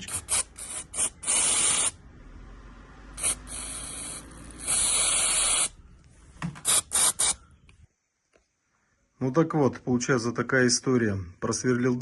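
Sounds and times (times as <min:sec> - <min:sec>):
aerosol spray hissing: 0:00.0 - 0:02.0, 0:03.1 - 0:05.8, 0:06.6 - 0:07.4.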